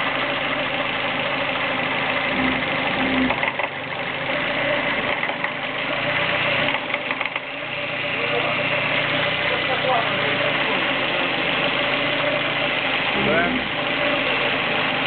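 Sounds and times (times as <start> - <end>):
vehicle engine idling: 0.0 - 15.0
pump knocking: 5.1 - 5.6, 6.6 - 7.6.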